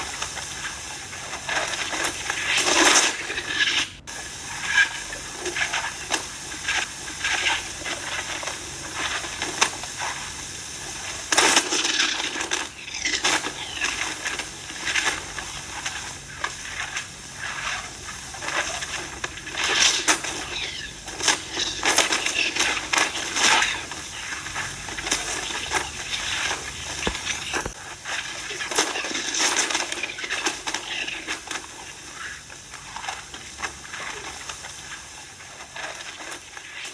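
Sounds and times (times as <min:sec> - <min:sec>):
crackling hissing noise: 0:00.0 - 0:36.9.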